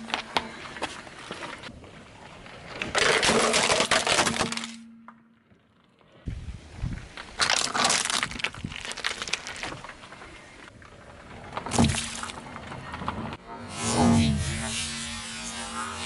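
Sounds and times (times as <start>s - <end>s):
car tyre crushing brittle objects: 0.0s - 6.2s, 6.9s - 13.4s.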